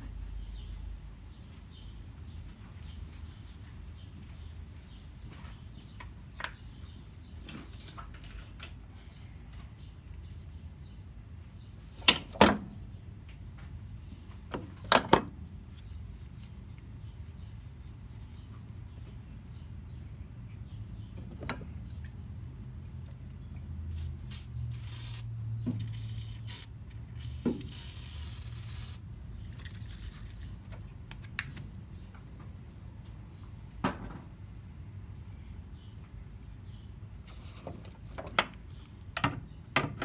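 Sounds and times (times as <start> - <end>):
wrench clicking on bolts: 23.1 - 29.0.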